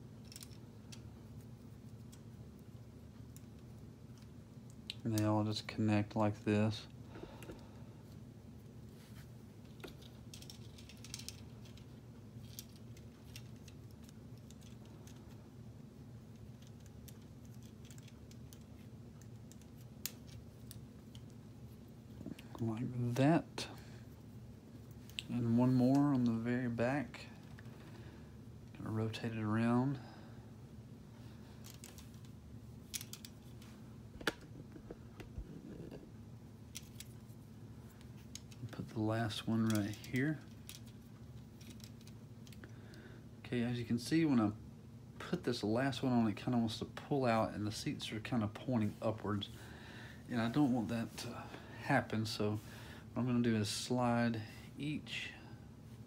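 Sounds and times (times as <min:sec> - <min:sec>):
steady low hum: 0:00.0 - 0:56.0
plastic pieces clicking and rattling: 0:09.8 - 0:15.3, 0:16.5 - 0:21.3, 0:32.9 - 0:33.6, 0:41.6 - 0:42.6
plastic pieces clicking and snapping: 0:16.5 - 0:18.6.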